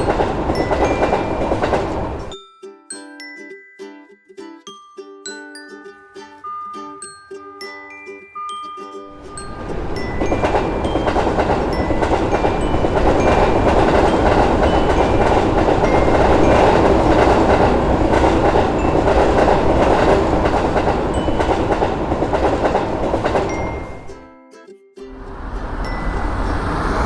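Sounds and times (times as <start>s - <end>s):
train rolling rumble: 0.0s - 2.3s, 9.2s - 24.1s, 25.1s - 27.0s
train wheel clatter: 0.0s - 2.3s, 9.4s - 24.1s.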